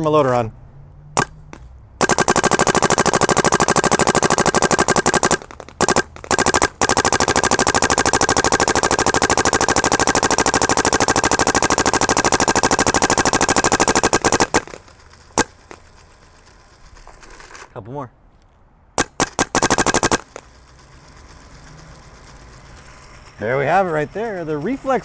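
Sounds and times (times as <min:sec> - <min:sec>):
paintball marker rapid firing: 0:01.2 - 0:16.9, 0:19.0 - 0:20.9.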